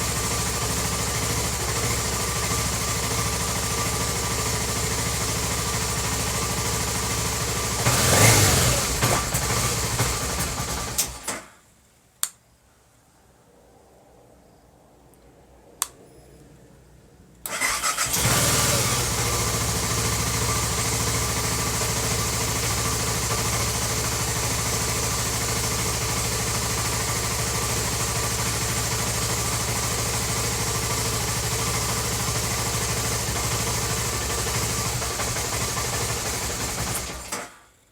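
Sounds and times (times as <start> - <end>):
motorcycle engine starting and idling: 0.0 - 11.6, 17.4 - 37.9
sharp click: 12.2 - 12.4, 15.8 - 16.0.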